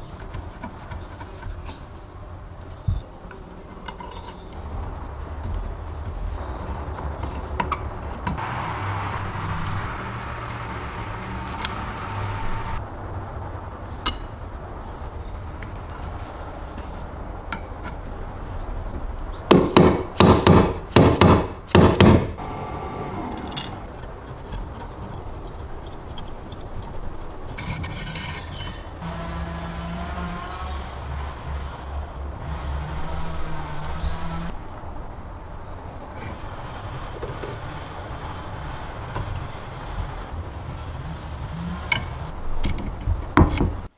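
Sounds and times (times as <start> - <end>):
loud sharp knocks: 19.5 - 22.4.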